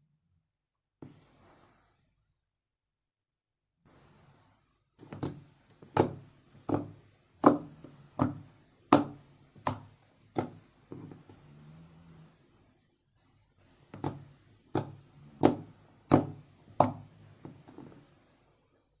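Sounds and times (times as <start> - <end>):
slime squishing: 5.0 - 11.9, 13.8 - 18.1.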